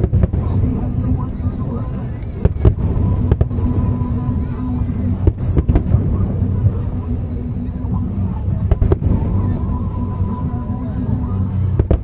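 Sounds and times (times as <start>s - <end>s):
low rumble of fireworks: 0.0s - 12.0s
sharp firework bangs: 8.4s - 12.0s.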